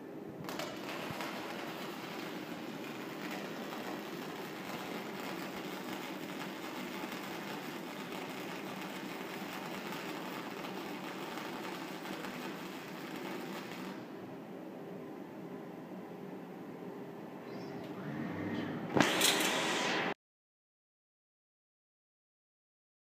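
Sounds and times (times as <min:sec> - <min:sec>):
welding arc crackling hiss: 0:00.0 - 0:14.1, 0:18.9 - 0:20.2.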